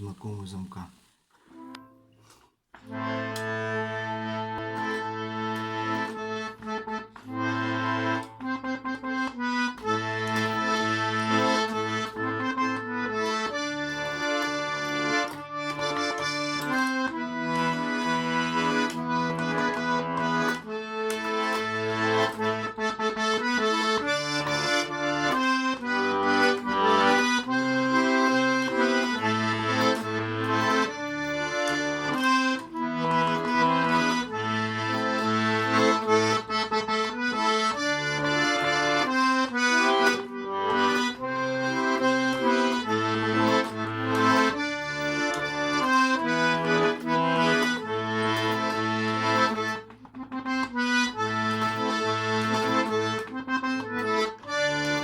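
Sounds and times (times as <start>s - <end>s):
button accordion melody: 1.4s - 55.0s.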